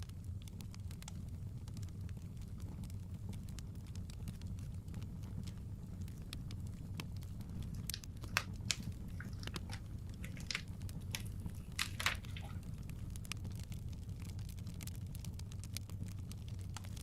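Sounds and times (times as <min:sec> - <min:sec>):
wood fire crackling: 0:00.0 - 0:17.0.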